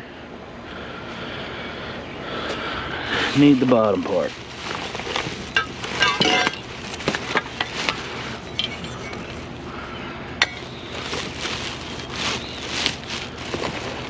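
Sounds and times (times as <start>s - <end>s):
hard objects clinking and knocking: 5.1s - 8.0s.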